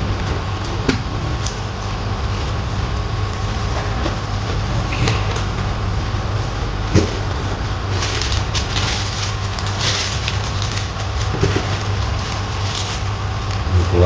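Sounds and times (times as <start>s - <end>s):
low hum: 0.0s - 14.0s
packaging rustling: 7.9s - 13.7s.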